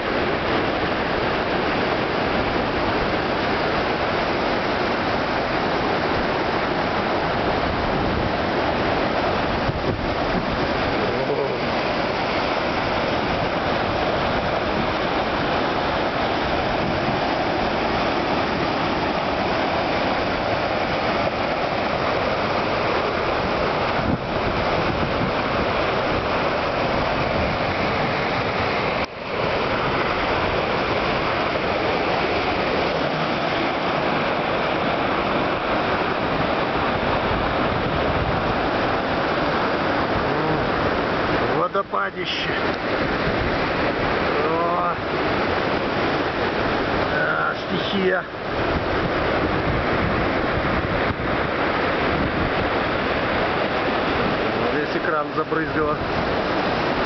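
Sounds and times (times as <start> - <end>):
waterfall crashing: 0.0 - 57.0.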